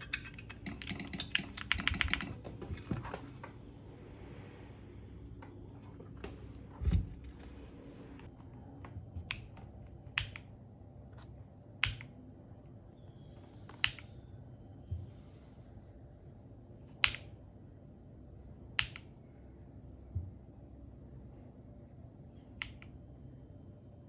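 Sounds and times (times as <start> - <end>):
keyboard clicks and taps: 0.0 - 3.1, 8.8 - 10.5, 11.2 - 12.2.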